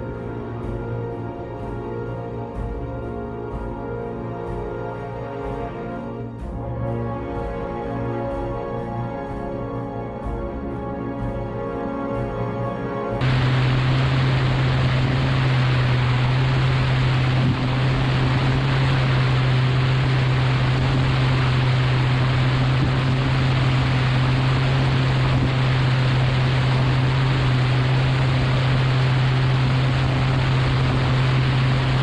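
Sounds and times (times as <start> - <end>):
loud even rushing noise: 13.2 - 32.0
low machine hum: 13.2 - 32.0.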